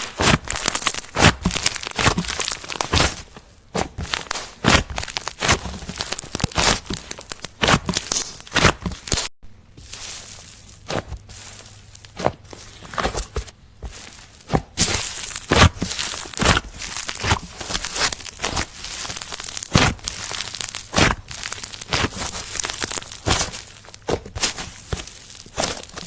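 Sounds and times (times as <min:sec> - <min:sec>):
slime crackling and tearing: 0:00.0 - 0:03.3, 0:03.9 - 0:13.2, 0:13.9 - 0:26.0
slime popping: 0:00.2 - 0:03.2, 0:04.0 - 0:09.3, 0:14.7 - 0:26.0.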